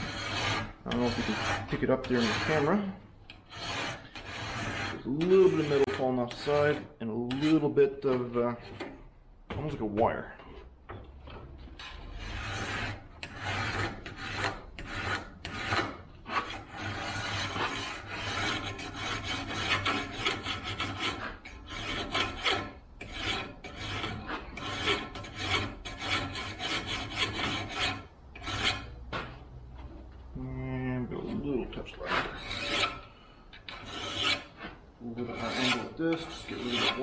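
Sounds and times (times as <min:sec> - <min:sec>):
file rasping on metal: 0:00.0 - 0:09.1, 0:11.3 - 0:29.0, 0:31.1 - 0:37.0.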